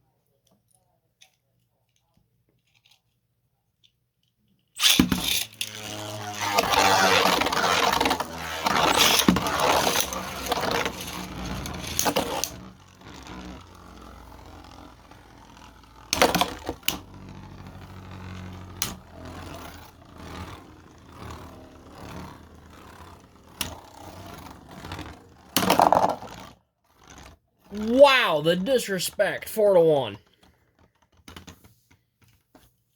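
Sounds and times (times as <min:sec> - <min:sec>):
spinning tops scraping and rattling: 0:04.8 - 0:27.9
spinning tops whirring: 0:04.8 - 0:28.0.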